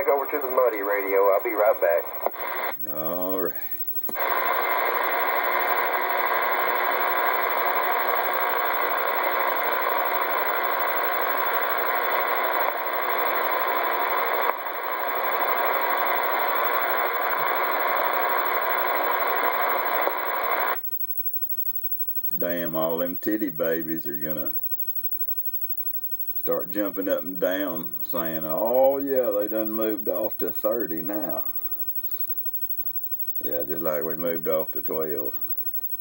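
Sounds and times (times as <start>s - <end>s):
radio static hiss: 0.0s - 36.0s.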